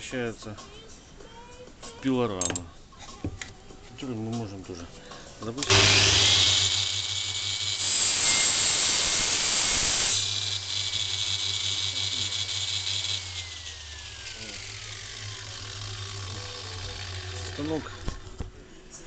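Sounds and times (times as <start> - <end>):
grinder winding down: 5.6 - 18.3
angle grinder whining: 5.6 - 18.4.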